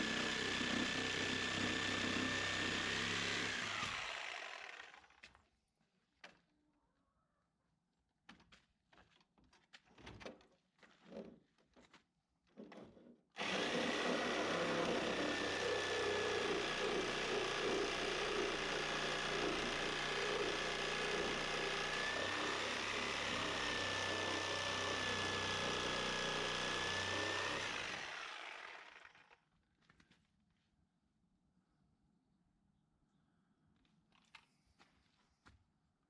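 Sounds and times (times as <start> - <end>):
power tool whining: 0.0 - 5.2, 13.4 - 29.4.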